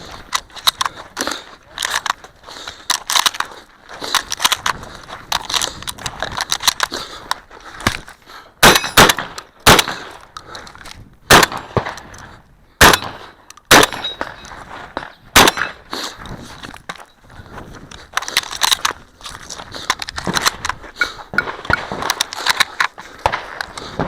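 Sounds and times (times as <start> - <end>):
gun handling clicks and clatter: 0.0 - 24.0
shotgun shots: 8.6 - 10.2, 11.3 - 12.1, 12.8 - 14.4, 15.0 - 15.8.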